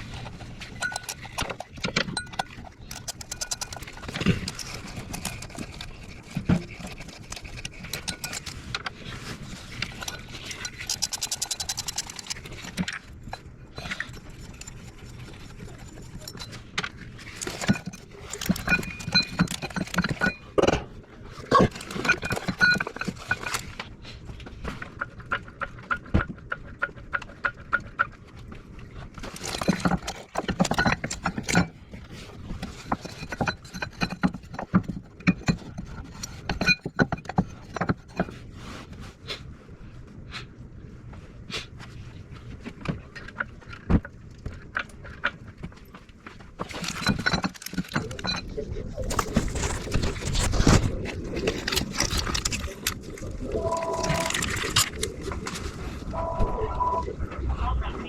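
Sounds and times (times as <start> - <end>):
hand tools clicking on metal: 0.8 - 8.9, 9.8 - 20.8.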